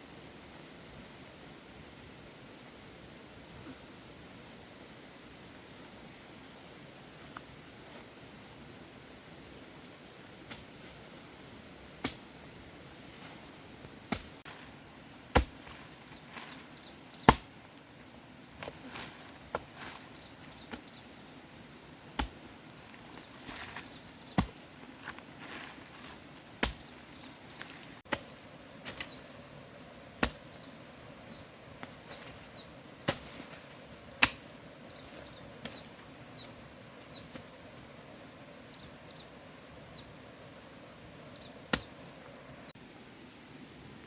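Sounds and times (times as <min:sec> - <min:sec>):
tool chopping wood: 0:15.3 - 0:15.8, 0:17.3 - 0:17.6, 0:22.2 - 0:22.4, 0:26.6 - 0:26.9, 0:30.2 - 0:30.5, 0:34.2 - 0:34.5, 0:41.7 - 0:41.9.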